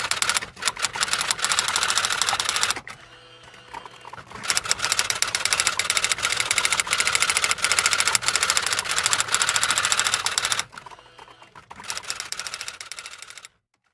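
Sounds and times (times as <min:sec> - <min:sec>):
typewriter keys clattering: 0:00.0 - 0:02.8.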